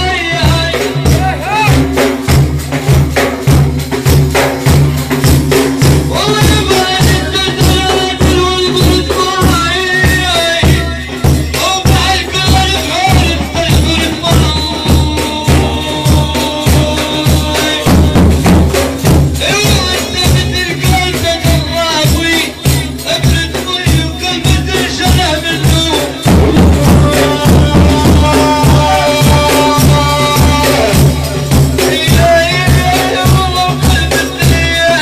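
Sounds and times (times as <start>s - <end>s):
frame drums beating: 0.0s - 35.0s
person chanting: 6.1s - 18.5s, 23.5s - 35.0s.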